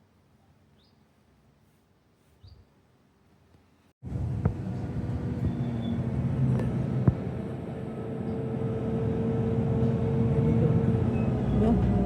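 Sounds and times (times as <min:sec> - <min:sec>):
vehicle engine hum: 0:04.0 - 0:12.0.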